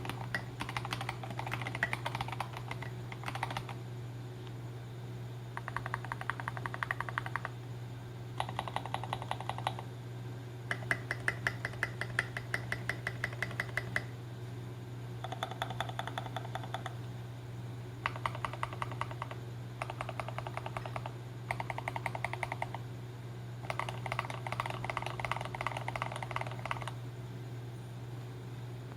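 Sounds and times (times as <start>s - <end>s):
typing on mechanical keyboard: 0.0s - 3.8s, 5.6s - 7.5s, 8.4s - 9.8s, 10.7s - 14.1s, 15.2s - 17.0s, 18.0s - 22.8s, 23.6s - 27.0s.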